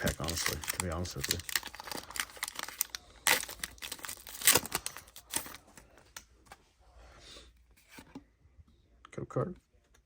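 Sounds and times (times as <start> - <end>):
foil wrapper crinkling and tearing: 0.0 - 5.7.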